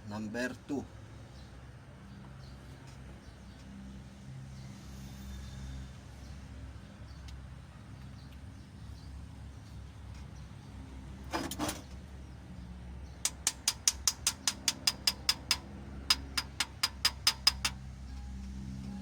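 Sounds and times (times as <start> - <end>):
metal tools clicking: 13.2 - 17.8.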